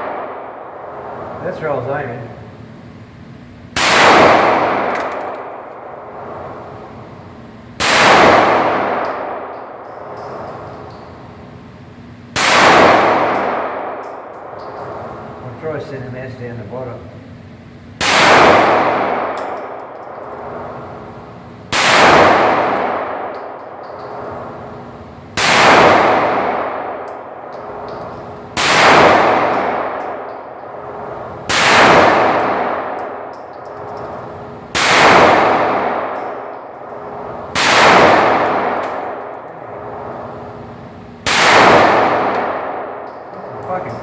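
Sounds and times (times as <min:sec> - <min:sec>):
pistol gunshots with ringing decay: 0:03.8 - 0:05.6, 0:07.8 - 0:10.2, 0:12.4 - 0:14.7, 0:18.0 - 0:21.0, 0:21.7 - 0:24.8, 0:25.4 - 0:33.3, 0:33.9 - 0:40.3, 0:41.3 - 0:43.6.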